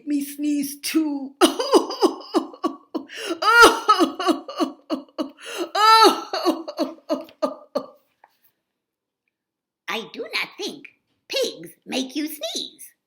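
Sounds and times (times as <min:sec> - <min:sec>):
woman making vocal sounds: 0:01.0 - 0:07.9
woman's long aah: 0:01.4 - 0:07.9.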